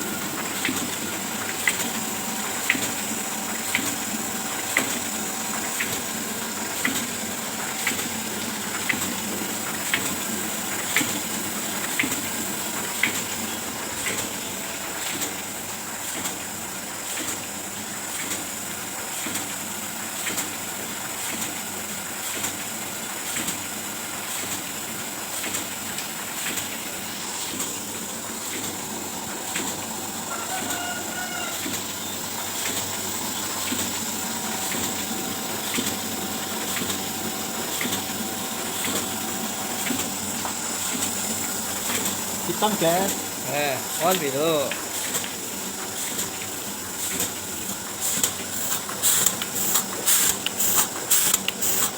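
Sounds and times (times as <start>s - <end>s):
printing press whirring: 0.0s - 51.9s
printing press clicking: 39.8s - 45.3s.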